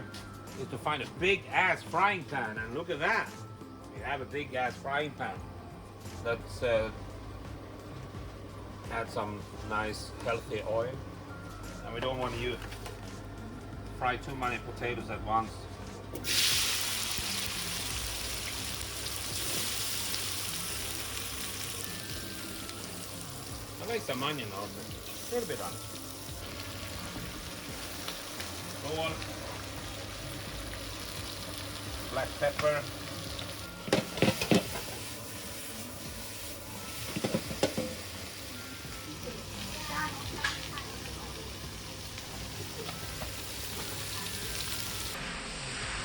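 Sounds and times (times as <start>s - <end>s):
potatoes sizzling in hot oil: 16.2s - 45.2s
utensil knocking against pan: 37.1s - 38.0s.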